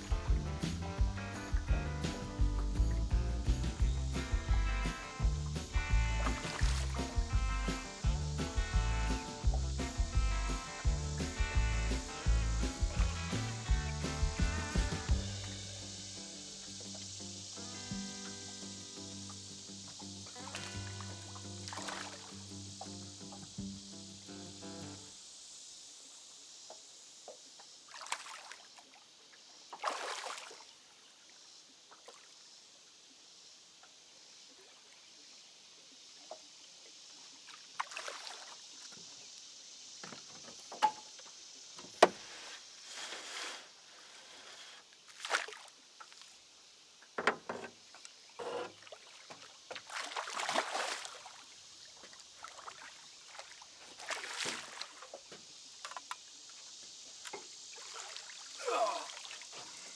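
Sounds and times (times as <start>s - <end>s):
water splashing beside boat: 0.0s - 15.8s, 19.9s - 22.6s, 26.7s - 30.9s, 36.2s - 39.4s, 40.0s - 46.4s, 47.2s - 59.9s
faint steady hiss: 0.0s - 59.9s.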